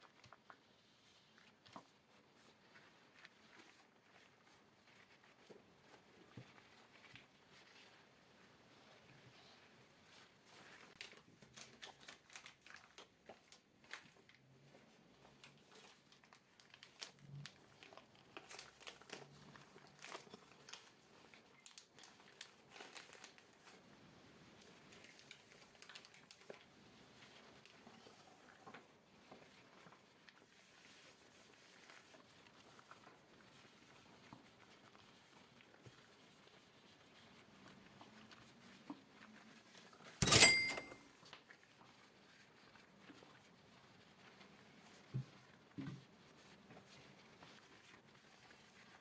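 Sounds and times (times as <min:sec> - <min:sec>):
small crinkling clicks and taps: 0:00.0 - 0:00.7, 0:10.1 - 0:23.8, 0:24.6 - 0:27.9, 0:44.3 - 0:49.0.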